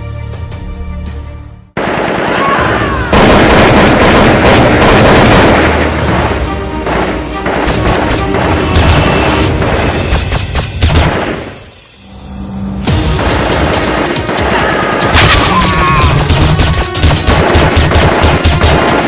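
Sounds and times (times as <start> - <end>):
rapid gunfire: 1.8 - 11.6, 12.9 - 19.0
explosions: 1.8 - 12.1, 12.8 - 19.0
loud action music: 3.0 - 19.0.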